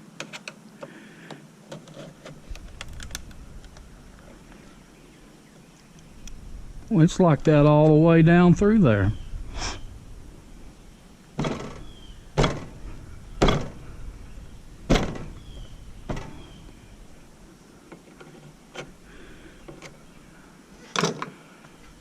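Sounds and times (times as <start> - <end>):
knocks and clanks of parts: 11.4 - 16.8.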